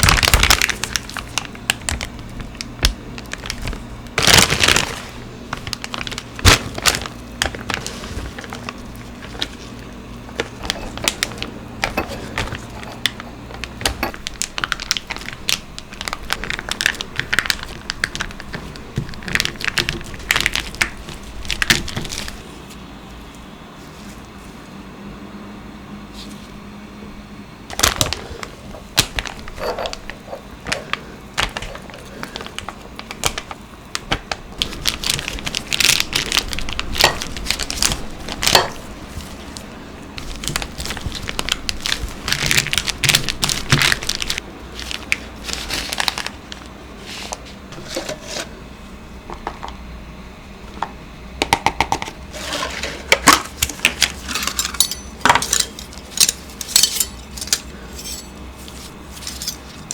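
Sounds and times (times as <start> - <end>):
baking utensils clicking and tapping: 53.1 - 58.3.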